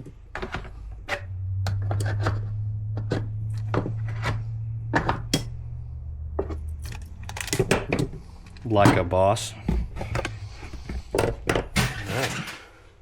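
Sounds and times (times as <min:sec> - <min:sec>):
steady low hum: 0:00.2 - 0:12.0
metal clicks and knocks: 0:06.3 - 0:11.8.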